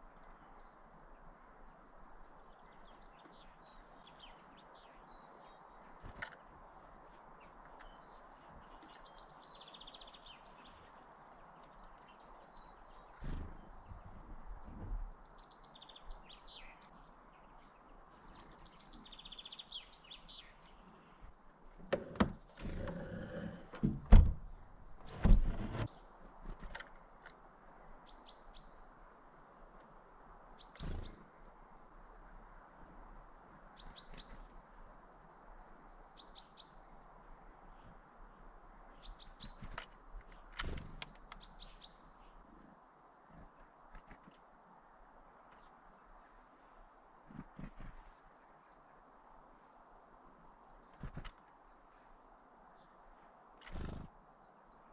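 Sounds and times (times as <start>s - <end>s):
small birds chirping: 0.0s - 54.9s.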